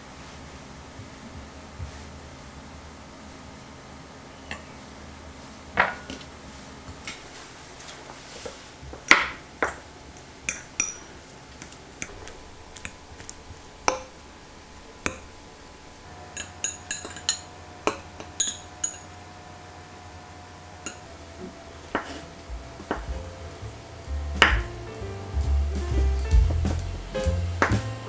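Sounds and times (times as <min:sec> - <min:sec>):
utensils and dishes clinking: 0:16.3 - 0:17.6, 0:18.3 - 0:19.2.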